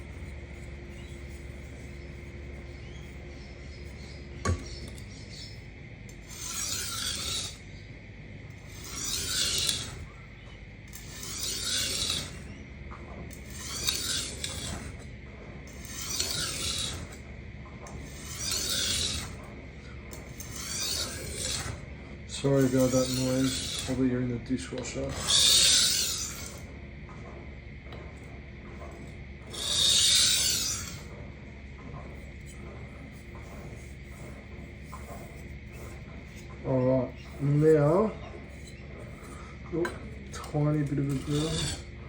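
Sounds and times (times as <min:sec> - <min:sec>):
steady hum: 0:00.0 - 0:42.0
knife scraping on sharpening plate: 0:06.1 - 0:07.6, 0:08.6 - 0:10.2, 0:10.9 - 0:12.6, 0:13.3 - 0:15.0, 0:15.7 - 0:17.2, 0:18.0 - 0:19.4, 0:20.2 - 0:21.8, 0:22.5 - 0:24.0, 0:25.1 - 0:26.7, 0:29.5 - 0:31.1, 0:37.2 - 0:41.9.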